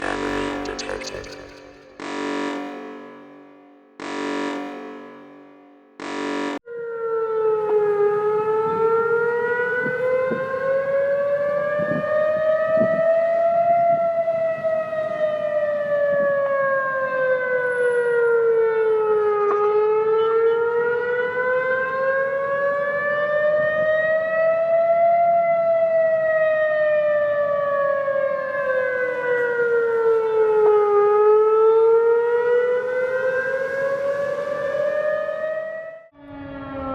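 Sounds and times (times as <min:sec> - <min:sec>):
wailing siren: 0:00.0 - 0:36.9.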